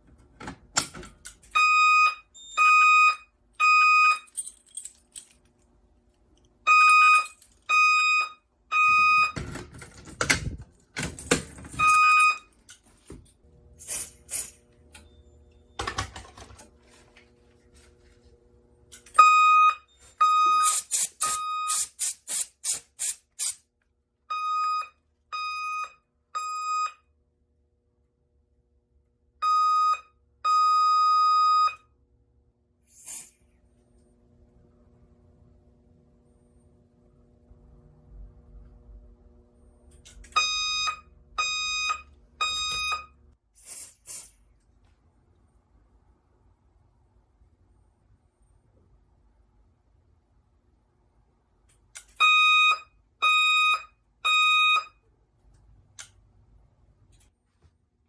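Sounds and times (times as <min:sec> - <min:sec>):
fire alarm evacuation beeps: 0:01.5 - 0:04.3, 0:06.7 - 0:09.6, 0:11.8 - 0:12.5, 0:19.2 - 0:21.8, 0:24.3 - 0:27.1, 0:29.4 - 0:31.9, 0:40.3 - 0:43.2, 0:52.2 - 0:55.0.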